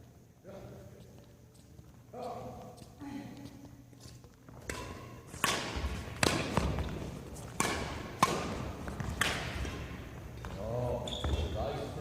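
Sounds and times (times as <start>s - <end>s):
rackets striking shuttlecock: 4.6s - 10.0s.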